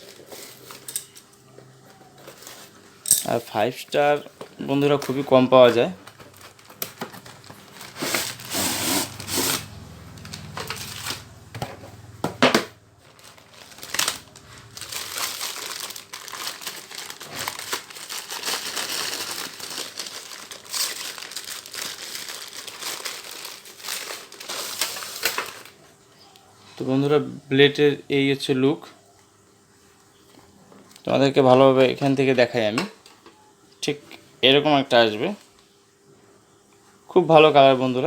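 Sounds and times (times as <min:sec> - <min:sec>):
packaging crinkling and rustling: 0:00.0 - 0:11.5, 0:13.0 - 0:25.8.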